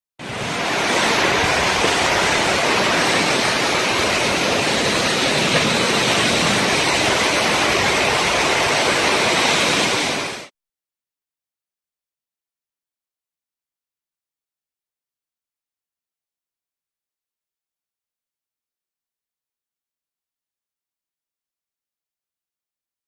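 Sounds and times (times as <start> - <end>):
heavy rain: 0.2 - 10.5
strong gusting wind: 0.2 - 10.5.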